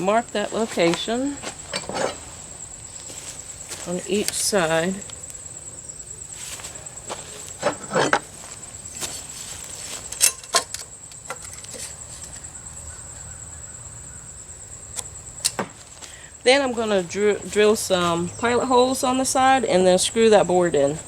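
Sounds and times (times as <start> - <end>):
high insect chirring: 0.0 - 21.0
knocks and clicks of wood and tools: 7.5 - 8.3, 10.0 - 12.4, 15.4 - 16.1.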